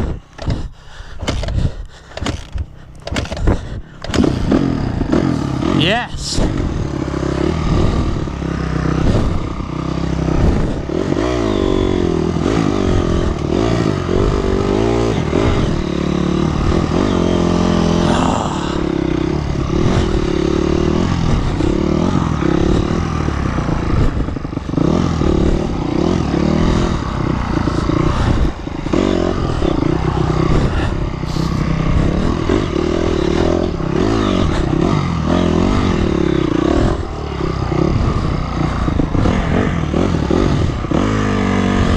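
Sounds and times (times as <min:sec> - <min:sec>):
dirt bike engine revving: 0:00.0 - 0:41.9.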